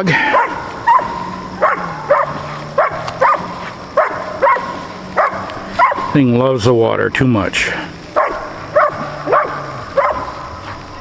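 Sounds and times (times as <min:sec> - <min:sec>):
steady low hum: 0:00.0 - 0:11.0
dog yipping: 0:00.4 - 0:06.2, 0:08.2 - 0:10.3.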